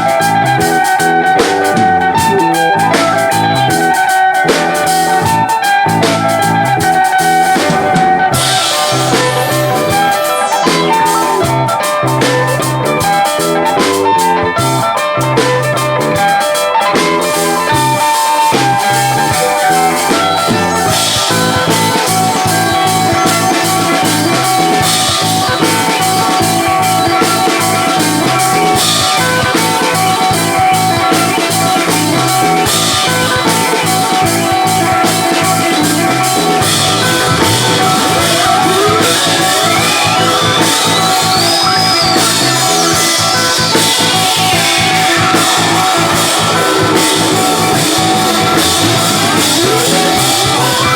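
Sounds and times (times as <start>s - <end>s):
live rock band playing: 0.0s - 50.9s
tone sweeping in pitch: 7.4s - 12.7s, 17.6s - 50.9s.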